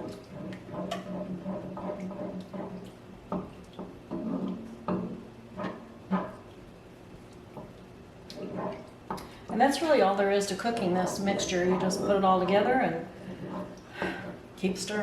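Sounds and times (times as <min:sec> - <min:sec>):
spoon stirring gravy in a pan: 0:00.0 - 0:09.6.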